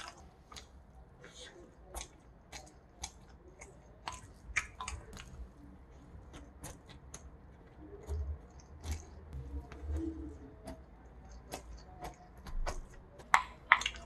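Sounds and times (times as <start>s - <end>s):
wet chewing and smacking: 0.0s - 14.0s.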